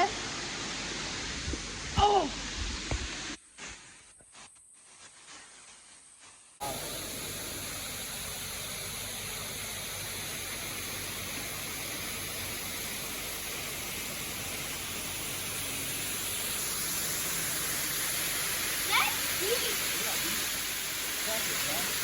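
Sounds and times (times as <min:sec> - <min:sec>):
waterfall rushing water: 0:06.6 - 0:22.0.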